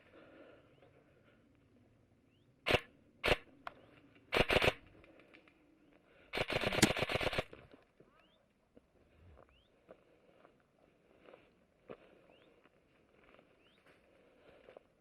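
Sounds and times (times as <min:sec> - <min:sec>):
airsoft rifle firing: 0:02.7 - 0:03.5, 0:06.4 - 0:07.6.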